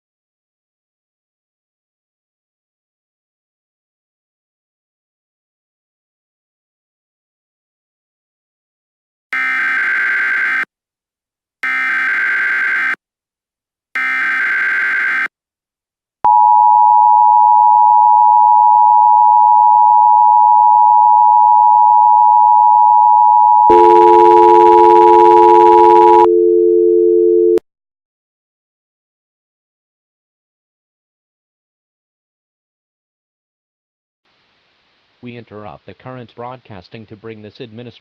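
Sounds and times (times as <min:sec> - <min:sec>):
loud two-tone attention signal: 0:23.6 - 0:26.4.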